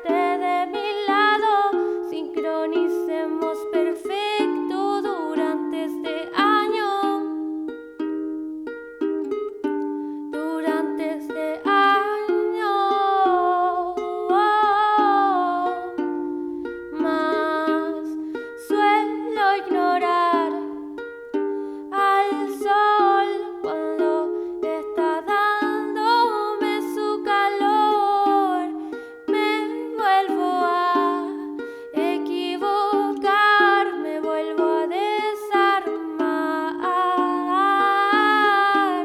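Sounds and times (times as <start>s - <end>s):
person singing high melody: 0.0s - 8.2s, 10.3s - 39.0s
plucked string instrument strumming: 0.0s - 39.0s.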